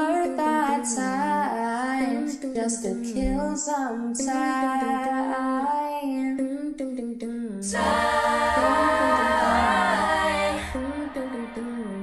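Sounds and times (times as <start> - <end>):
woman singing: 0.0 - 9.3, 10.7 - 12.0
wordless vocal harmonies: 7.5 - 12.0.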